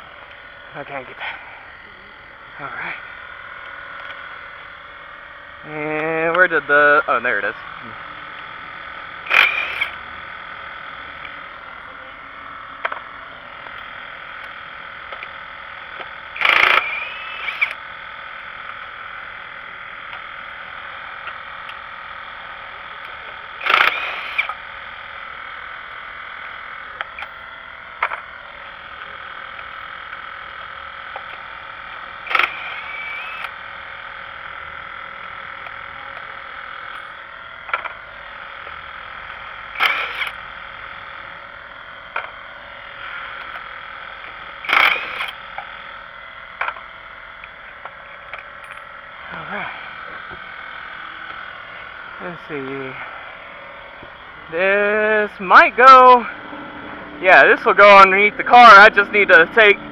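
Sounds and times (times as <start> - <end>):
frogs calling: 16.4 - 18.1.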